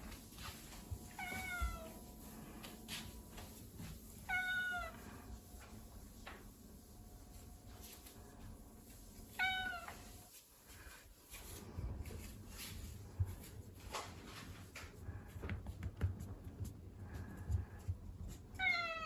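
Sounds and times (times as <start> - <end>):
cat meowing: 1.2 - 1.9, 4.3 - 5.0, 9.4 - 10.0, 18.6 - 19.0.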